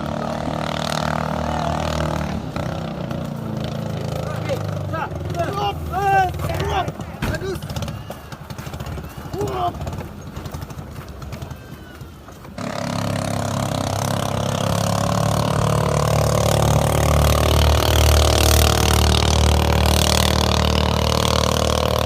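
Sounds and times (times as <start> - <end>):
boat engine running hard: 12.6 - 22.0.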